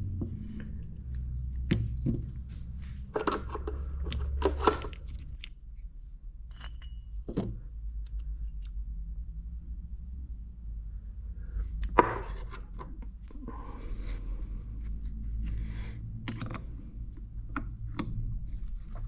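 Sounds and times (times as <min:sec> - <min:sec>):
low steady hum: 0:00.0 - 0:19.0
metal parts and tools clinking: 0:03.1 - 0:05.5, 0:06.5 - 0:07.5.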